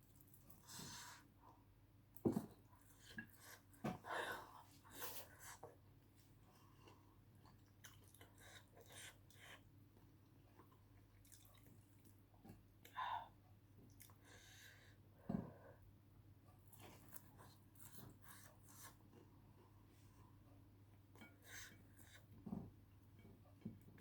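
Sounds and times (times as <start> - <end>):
chewing food: 6.6 - 9.6, 10.4 - 12.7.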